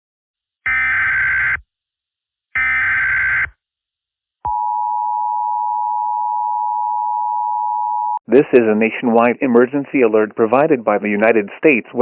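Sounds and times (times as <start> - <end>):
steady attention tone: 4.5 - 8.2.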